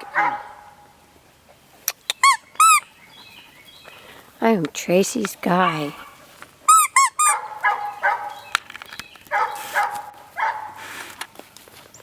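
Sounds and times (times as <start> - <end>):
dog yipping and barking: 0.0 - 0.8, 5.6 - 8.6, 9.3 - 10.8
dog squealing: 2.2 - 2.9, 5.6 - 8.4.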